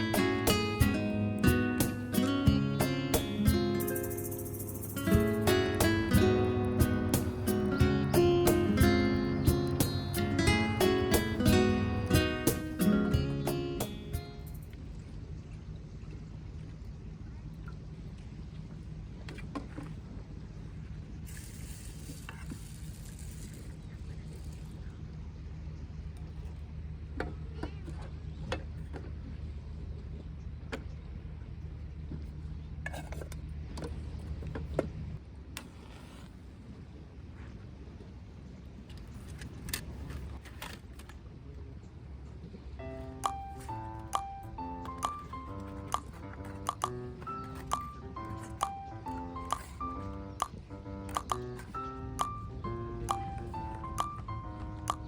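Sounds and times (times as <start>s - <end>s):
instrumental melody of held notes: 0.0s - 14.6s, 42.8s - 55.0s
sharp percussive clicks: 3.2s - 6.2s, 43.2s - 55.0s
low engine-like drone: 41.0s - 55.0s.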